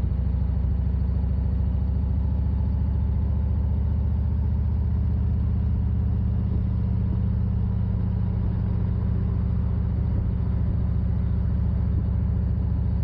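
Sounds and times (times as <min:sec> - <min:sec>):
motorcycle engine running steadily: 0:00.0 - 0:13.0.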